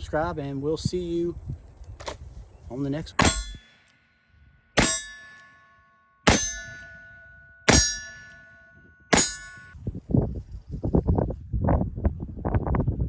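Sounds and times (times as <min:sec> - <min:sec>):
loud metallic clangs ringing: 0:03.1 - 0:09.8.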